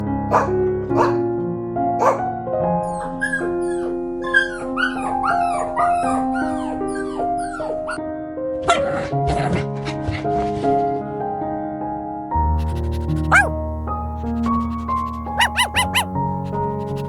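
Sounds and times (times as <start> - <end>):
background piano music: 0.0 - 9.9
dog whimpering and yelping: 3.0 - 8.0, 12.6 - 13.6, 14.2 - 17.0.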